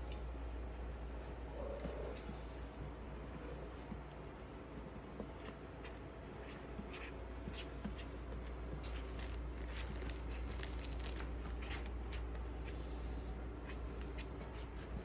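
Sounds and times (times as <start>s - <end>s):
cat kneading soft scratches: 3.4s - 13.0s.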